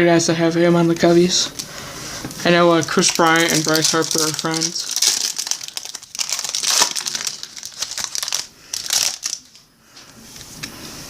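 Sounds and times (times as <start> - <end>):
foil wrapper crinkling: 2.5 - 9.6
cards being shuffled: 2.8 - 9.6.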